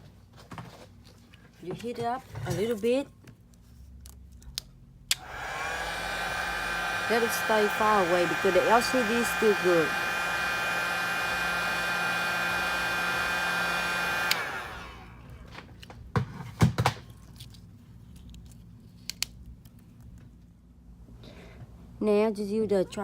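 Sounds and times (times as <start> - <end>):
heat gun blowing: 5.1 - 15.3.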